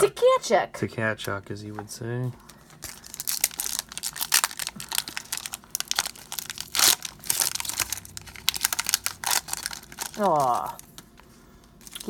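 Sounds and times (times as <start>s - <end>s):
card pack wrapper crinkling: 2.5s - 11.2s, 11.8s - 12.0s.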